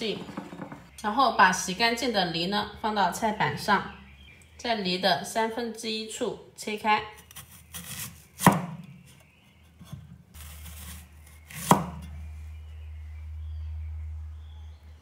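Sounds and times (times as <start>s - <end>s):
knife rasping through fruit: 7.2s - 8.6s.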